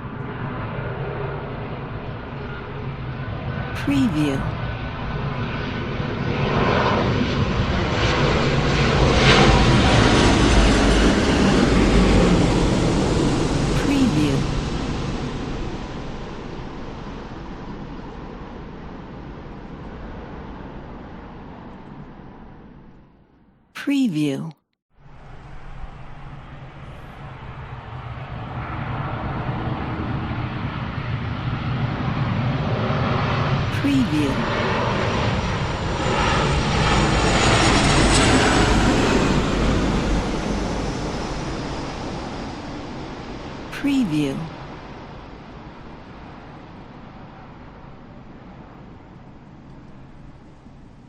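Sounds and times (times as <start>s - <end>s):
airplane engine noise: 4.5s - 22.7s.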